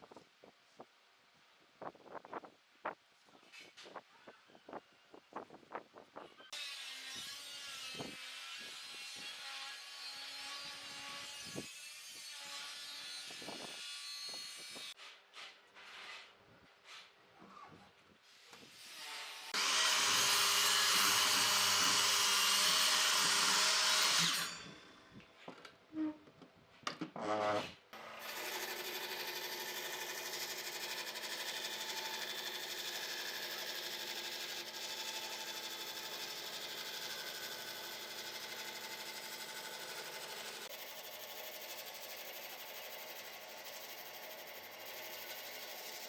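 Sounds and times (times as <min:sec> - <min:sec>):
power tool noise: 0:18.9 - 0:25.0, 0:27.4 - 0:46.0
power tool running with whine: 0:19.6 - 0:24.6, 0:28.0 - 0:46.0.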